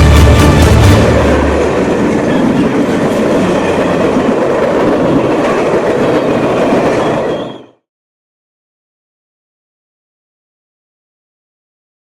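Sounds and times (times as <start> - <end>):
train rumbling on track: 0.0 - 7.8.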